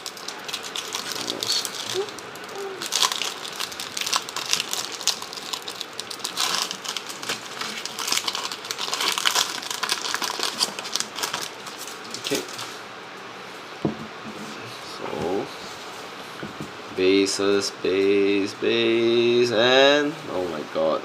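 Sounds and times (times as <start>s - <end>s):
foil wrapper crinkling: 0.0s - 12.8s.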